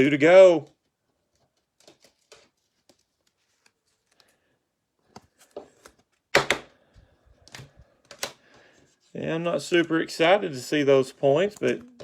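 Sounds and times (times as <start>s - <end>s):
cards clicking and tapping: 5.1s - 6.7s, 7.5s - 8.6s.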